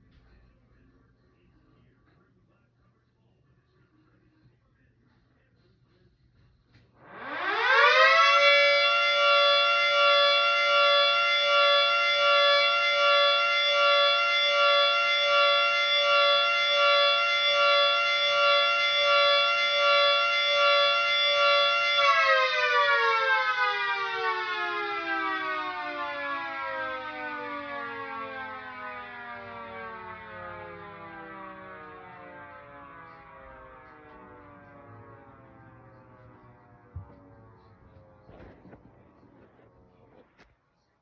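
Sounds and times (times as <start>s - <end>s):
two-tone siren: 7.0s - 40.5s.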